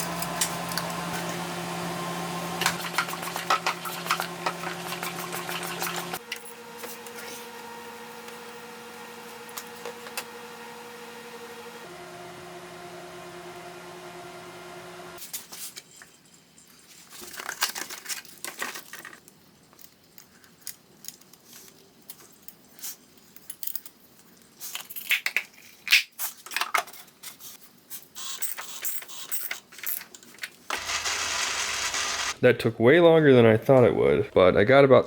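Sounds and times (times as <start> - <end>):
steady mechanical hum: 0.0 - 15.2, 30.2 - 32.6.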